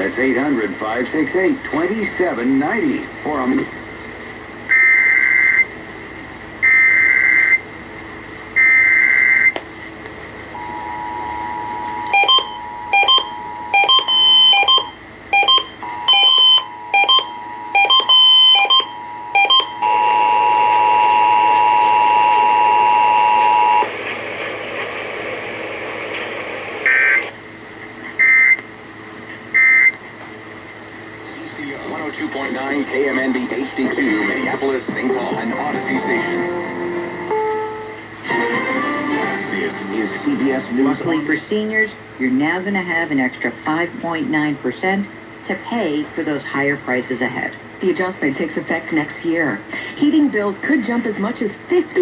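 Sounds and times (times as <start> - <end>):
two-tone attention signal: 10.6 - 23.9.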